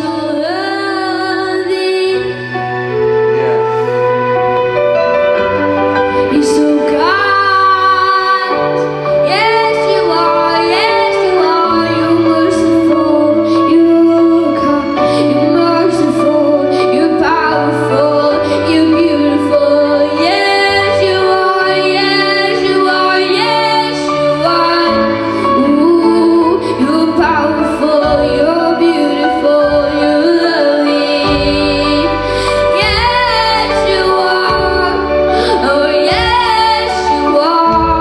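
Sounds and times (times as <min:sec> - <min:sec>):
sustained instrumental chords: 0:00.0 - 0:38.0
woman singing slow melody: 0:06.3 - 0:38.0
bass line: 0:17.0 - 0:38.0.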